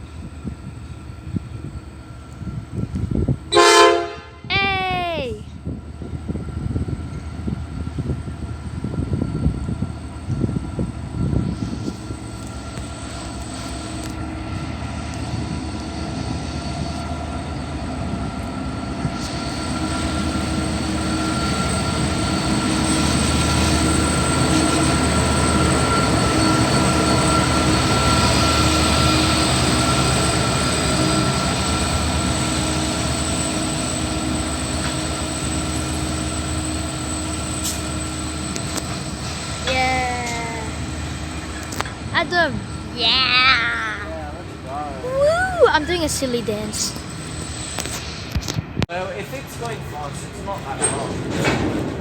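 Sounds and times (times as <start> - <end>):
locomotive engine running: 10.1 - 48.3
wheels rolling over rails: 49.6 - 52.0.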